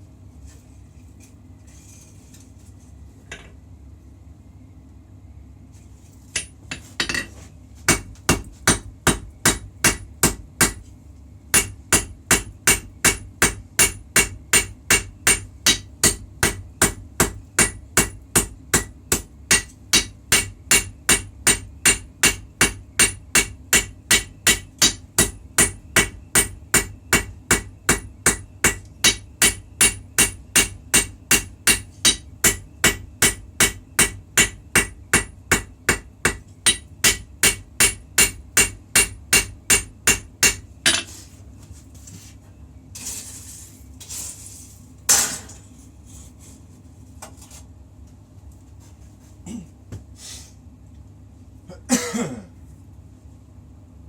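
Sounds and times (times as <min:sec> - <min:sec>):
hammer striking blade on anvil: 0:11.6 - 0:41.1.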